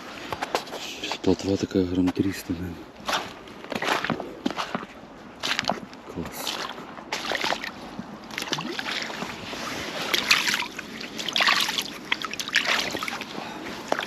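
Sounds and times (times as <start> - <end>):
water splashing and sloshing: 3.0 - 14.0.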